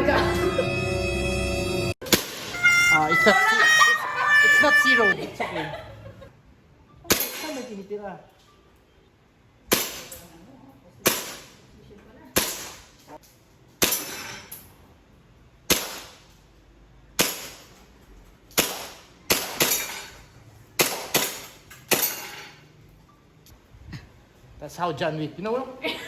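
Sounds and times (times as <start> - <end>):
airsoft pistol shots: 15.7 - 16.2, 18.6 - 19.9, 20.8 - 22.2.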